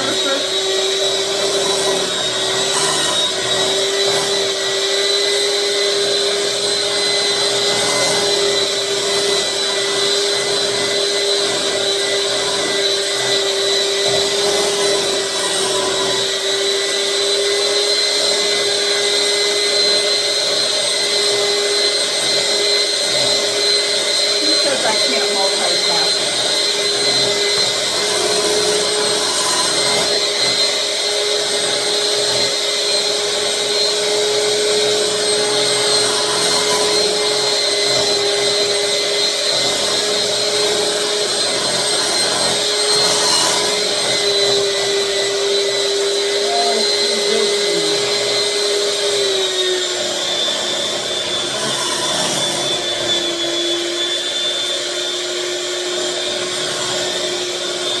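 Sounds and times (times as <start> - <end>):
blender motor whining: 0.0 - 58.0.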